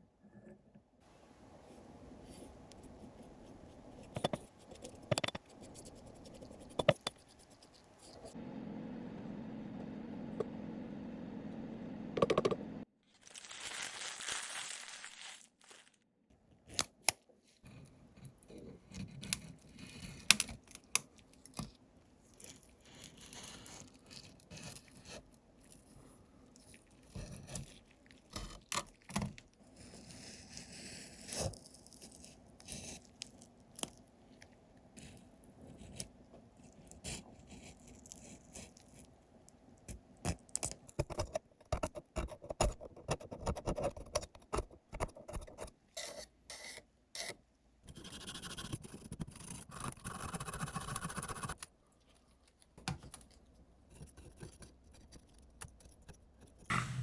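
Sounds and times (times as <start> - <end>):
steady low hum: 1.1 - 12.9, 56.7 - 57.0
clicks and scrapes of small parts: 3.8 - 8.4, 16.7 - 29.5, 39.9 - 56.7.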